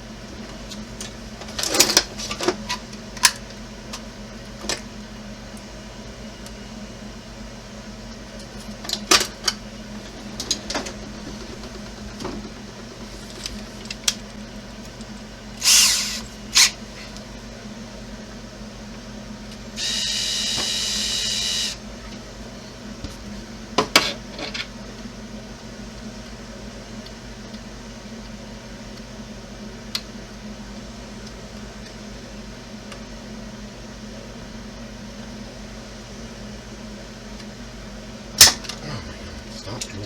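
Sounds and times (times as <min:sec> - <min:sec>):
power drill whining: 0:15.6 - 0:16.2, 0:19.8 - 0:21.8.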